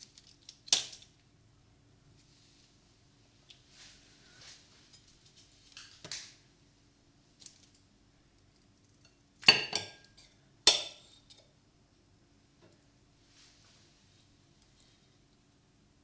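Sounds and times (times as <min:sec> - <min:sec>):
soft rustle: 0:02.1 - 0:06.0, 0:13.2 - 0:15.2
kitchenware clinking: 0:09.0 - 0:11.5.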